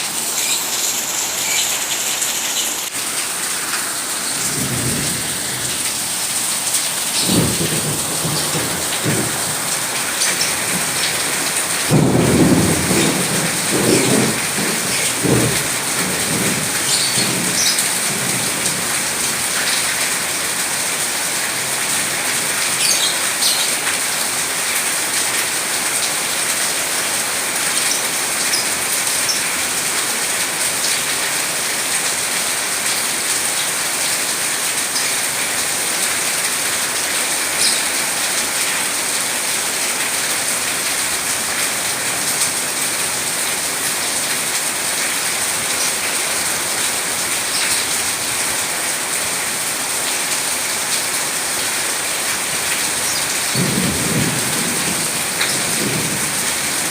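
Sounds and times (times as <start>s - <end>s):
steady rain: 0.0s - 56.9s
high bird chirps: 0.4s - 2.8s, 16.9s - 17.8s
low thunder rumble: 4.4s - 5.8s, 7.2s - 9.9s, 11.8s - 18.9s, 53.5s - 56.5s.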